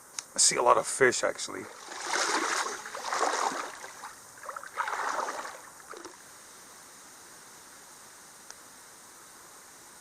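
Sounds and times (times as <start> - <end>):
creek flowing faintly: 0.4 - 7.0
water splashing from wading: 1.5 - 6.2.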